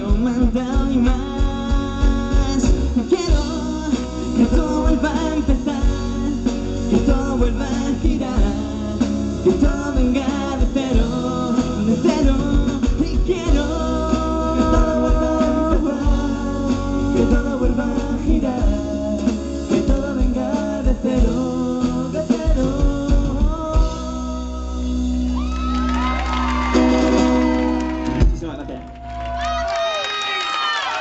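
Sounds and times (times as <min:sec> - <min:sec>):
person singing: 0:00.0 - 0:25.1
live pop-rock band playing: 0:00.0 - 0:29.7.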